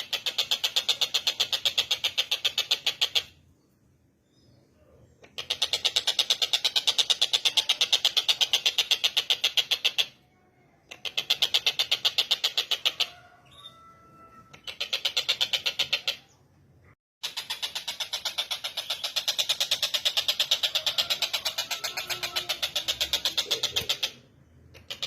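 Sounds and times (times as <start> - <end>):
kingfisher rattling call: 17.2 - 24.2.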